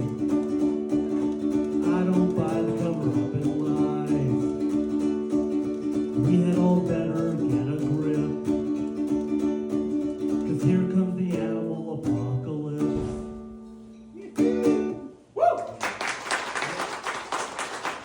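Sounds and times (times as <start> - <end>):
person singing: 0.0 - 9.4, 10.2 - 13.4, 14.1 - 15.7
strummed plucked-string instrument: 0.0 - 15.1
person whooping: 14.2 - 16.0
audience applause: 15.8 - 18.0.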